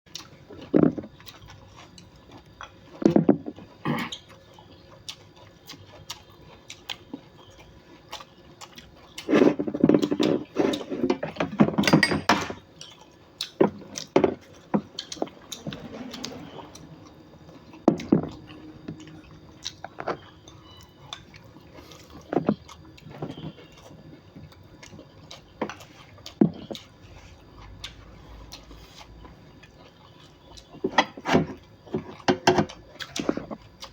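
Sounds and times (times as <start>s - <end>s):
kitchen knocks and clicks: 11.4s - 12.6s
clattering: 11.8s - 12.6s.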